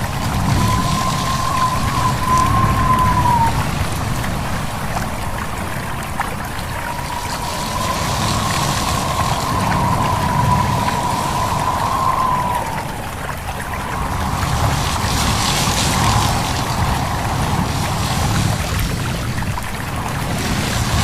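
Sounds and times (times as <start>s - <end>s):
thin wavering whistle: 0.0s - 4.3s, 6.3s - 18.0s
stream trickling: 0.0s - 21.0s
wind rumbling: 0.0s - 21.0s.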